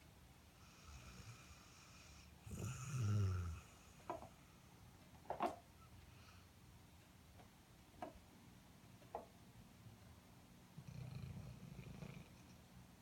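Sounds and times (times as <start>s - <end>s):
dog snoring: 0.6s - 4.3s, 10.8s - 12.6s.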